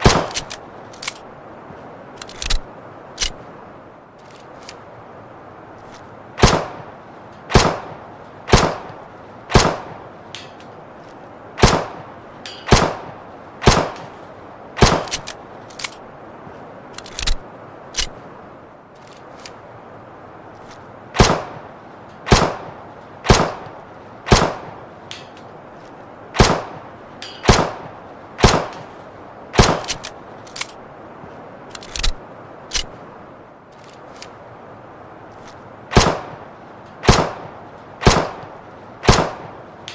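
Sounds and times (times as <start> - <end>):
mechanical clicks: 2.2 - 3.4, 16.9 - 18.1, 31.7 - 32.9
pistol shots: 7.5 - 7.9, 9.5 - 10.0, 11.6 - 12.0, 12.7 - 14.1, 22.3 - 22.7, 24.3 - 24.7, 26.4 - 26.8, 28.4 - 28.8, 35.9 - 36.4, 37.0 - 38.4, 39.0 - 39.5.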